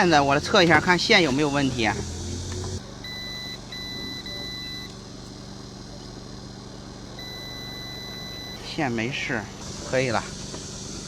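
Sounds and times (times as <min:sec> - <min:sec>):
continuity tester beeping: 0:00.0 - 0:05.0, 0:07.2 - 0:08.9.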